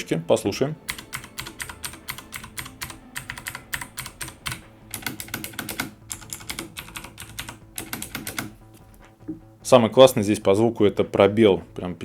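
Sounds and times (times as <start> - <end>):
mechanical keyboard clicking: 0.9 - 8.6.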